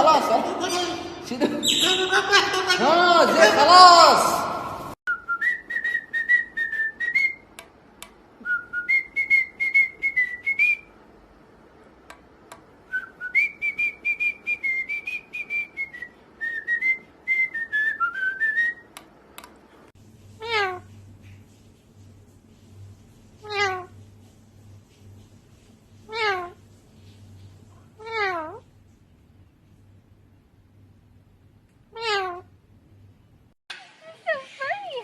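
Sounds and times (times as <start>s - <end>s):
parrot whistling a tune: 5.1s - 7.4s, 8.4s - 10.9s, 12.9s - 18.9s
parrot clicks: 18.9s - 19.6s
parrot meow-like calls: 20.4s - 20.9s, 23.4s - 24.0s, 26.1s - 26.6s, 28.0s - 28.6s, 31.9s - 32.5s.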